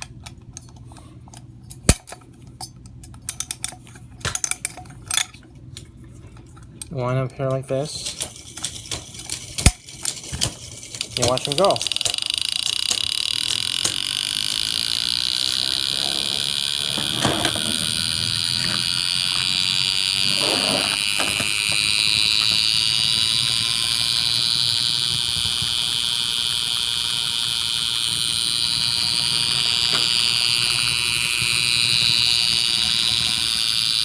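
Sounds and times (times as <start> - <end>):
clockwork toy motor whirring: 8.0 - 34.0.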